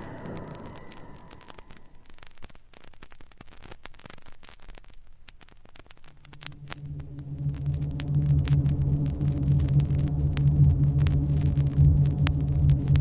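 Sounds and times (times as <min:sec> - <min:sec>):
faint record hiss: 0:00.0 - 0:13.0
vinyl record crackles and clicks: 0:00.0 - 0:13.0
low electronic hum: 0:06.0 - 0:13.0.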